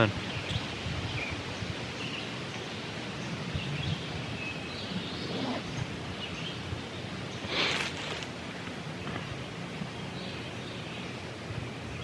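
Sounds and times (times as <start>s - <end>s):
small birds chirping: 0.0s - 12.0s
short rustle: 7.4s - 8.4s.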